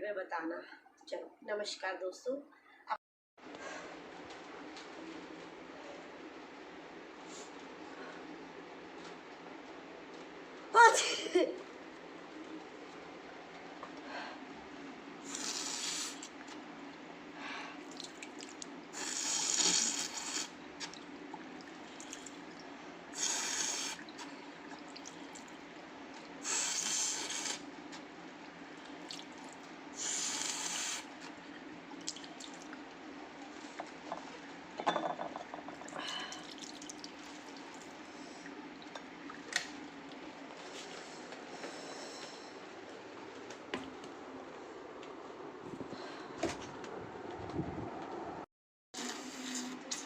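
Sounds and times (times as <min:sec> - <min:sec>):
woman blowing her nose: 0:15.3 - 0:16.2, 0:26.4 - 0:27.6, 0:30.0 - 0:31.1.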